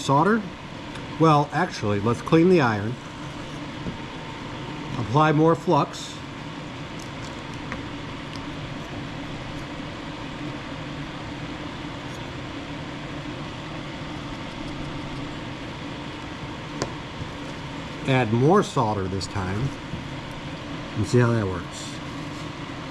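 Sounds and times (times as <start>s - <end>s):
fan hum: 0.0s - 22.9s.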